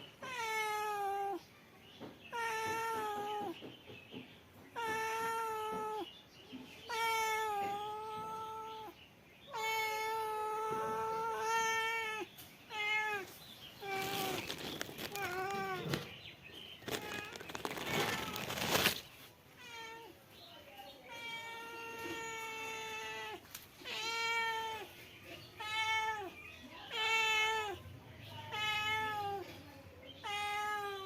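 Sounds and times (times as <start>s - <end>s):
cat meowing: 0.2s - 1.4s, 2.3s - 3.6s, 4.8s - 6.1s, 6.9s - 16.1s, 21.1s - 24.9s, 25.6s - 27.8s, 28.4s - 29.4s, 30.2s - 31.0s.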